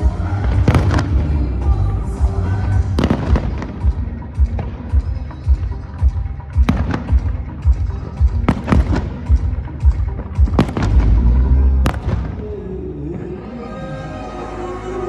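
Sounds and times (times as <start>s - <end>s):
loud show music with bass beat: 0.0s - 12.4s
fireworks bangs: 0.4s - 1.5s, 3.0s - 12.6s.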